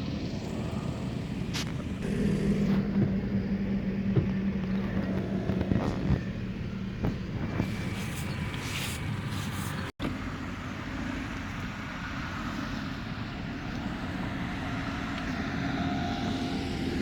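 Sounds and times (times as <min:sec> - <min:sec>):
car engine running: 0:00.0 - 0:10.8.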